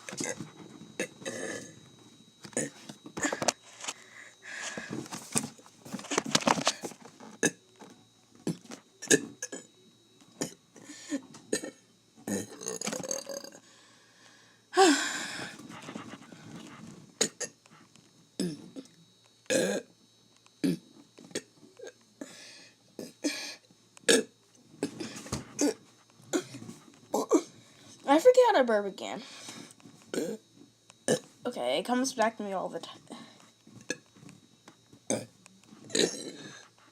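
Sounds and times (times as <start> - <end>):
person burping: 1.0 - 1.8, 2.5 - 3.4, 7.4 - 7.6, 8.4 - 9.7, 11.5 - 13.6, 17.2 - 17.6, 18.4 - 18.9, 19.5 - 19.9, 20.6 - 22.0, 23.0 - 27.6, 30.1 - 30.4, 31.1 - 31.3, 35.1 - 36.6.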